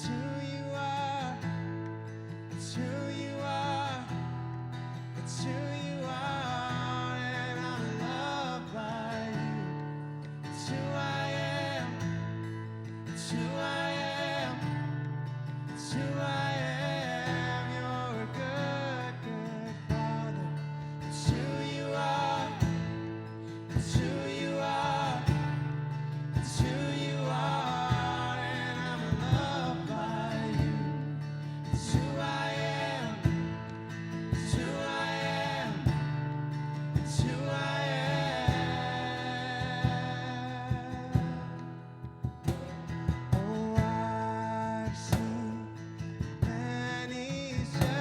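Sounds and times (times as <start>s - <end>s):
acoustic guitar strumming: 0.0s - 48.0s
person singing worship song: 10.5s - 12.4s, 13.1s - 14.9s, 15.8s - 41.6s.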